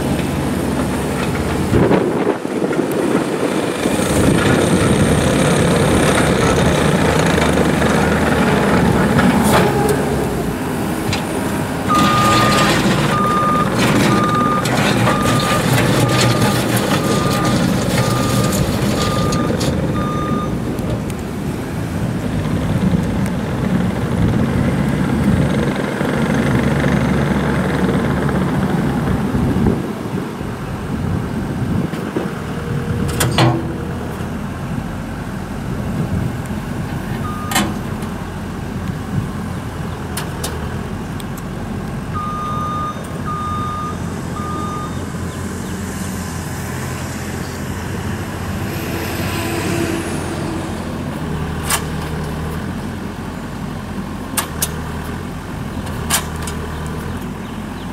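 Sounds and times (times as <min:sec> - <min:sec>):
diesel engine running: 0:00.0 - 0:57.9
reversing alarm beeps: 0:11.9 - 0:20.6, 0:37.2 - 0:37.6, 0:42.2 - 0:45.0.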